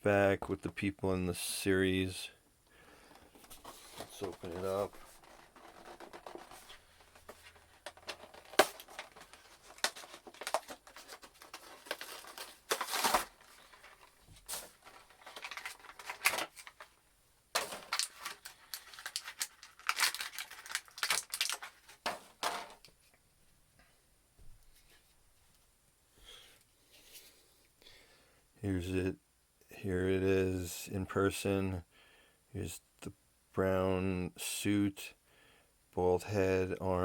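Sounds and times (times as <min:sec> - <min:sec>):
cardboard and plastic tearing: 0:03.4 - 0:17.0, 0:17.6 - 0:22.8.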